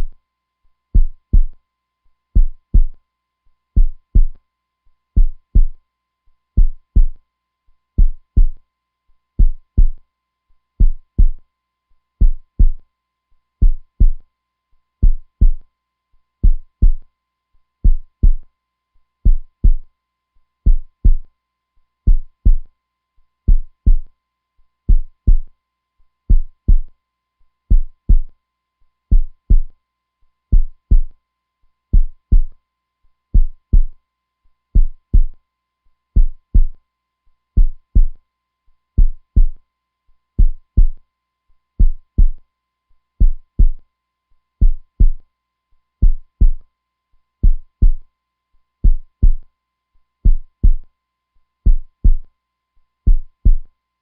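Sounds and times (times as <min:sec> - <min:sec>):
heartbeat thumping: 0:01.0 - 0:01.6, 0:02.4 - 0:03.0, 0:03.8 - 0:04.4, 0:05.2 - 0:05.8, 0:06.6 - 0:07.2, 0:08.0 - 0:08.6, 0:09.4 - 0:10.0, 0:10.8 - 0:11.4, 0:12.2 - 0:12.8, 0:13.6 - 0:14.2, 0:15.0 - 0:15.6, 0:16.4 - 0:17.0, 0:17.8 - 0:18.4, 0:19.3 - 0:19.8, 0:20.7 - 0:21.2, 0:22.1 - 0:22.7, 0:23.5 - 0:24.1, 0:24.9 - 0:25.5, 0:26.3 - 0:26.9, 0:27.7 - 0:28.3, 0:29.1 - 0:29.7, 0:30.5 - 0:31.1, 0:32.0 - 0:32.5, 0:33.4 - 0:33.9, 0:34.8 - 0:35.4, 0:36.2 - 0:36.8, 0:37.6 - 0:38.2, 0:39.0 - 0:39.6, 0:40.4 - 0:41.0, 0:41.8 - 0:42.4, 0:43.2 - 0:43.8, 0:44.6 - 0:45.2, 0:46.0 - 0:46.6, 0:47.4 - 0:48.0, 0:48.8 - 0:49.4, 0:50.3 - 0:50.8, 0:51.7 - 0:52.2, 0:53.1 - 0:53.7.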